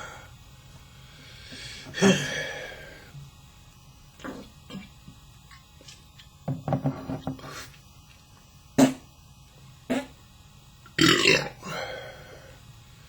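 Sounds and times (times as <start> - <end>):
man belching: 11.0 - 11.9.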